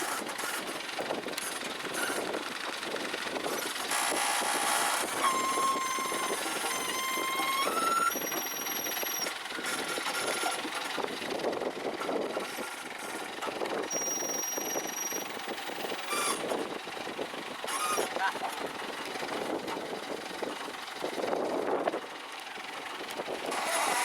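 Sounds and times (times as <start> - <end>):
crane engine running: 0.0 - 24.0
held tones: 3.9 - 9.3.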